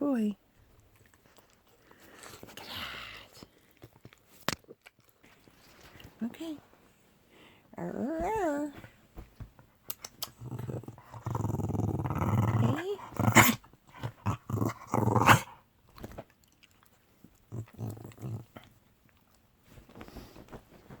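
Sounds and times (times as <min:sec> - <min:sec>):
dog coughing: 0:13.1 - 0:13.6.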